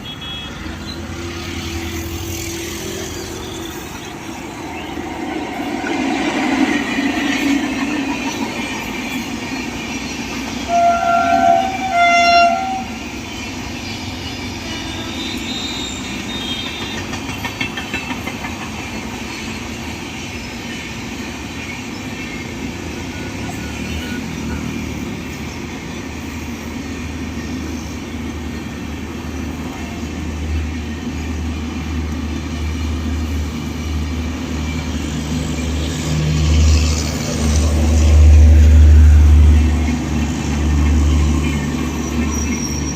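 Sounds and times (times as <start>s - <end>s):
passing train running on track: 0.0s - 42.9s
train horn blasts: 10.6s - 13.2s.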